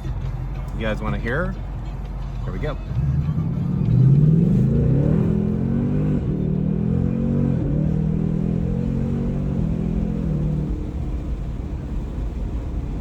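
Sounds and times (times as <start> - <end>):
car engine revving: 2.7 - 13.0.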